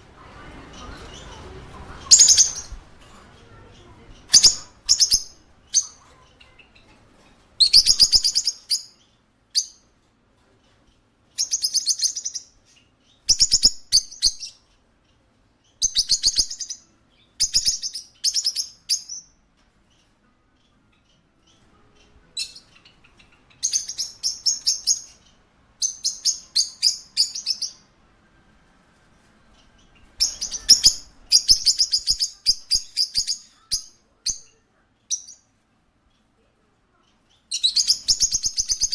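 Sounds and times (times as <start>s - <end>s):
parakeet chirping: 0.2s - 2.8s, 3.4s - 7.0s, 7.6s - 9.9s, 11.4s - 14.7s, 15.7s - 19.4s, 20.0s - 28.0s, 29.5s - 35.5s, 37.2s - 38.9s.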